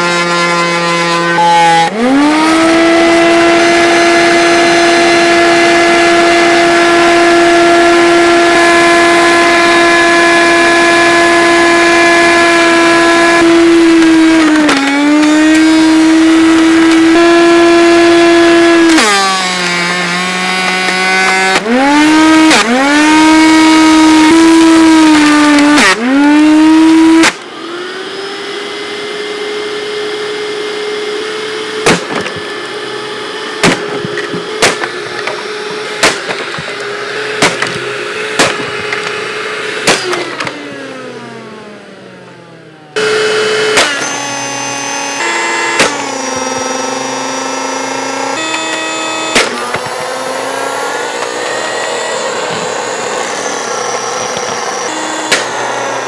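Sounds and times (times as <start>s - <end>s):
carpet cleaner motor whine: 0.0s - 56.0s.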